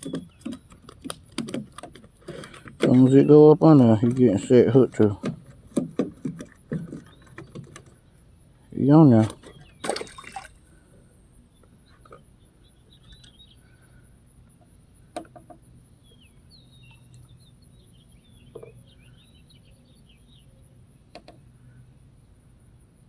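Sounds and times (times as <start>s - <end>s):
faint bird twittering: 7.0s - 15.1s, 15.9s - 21.9s.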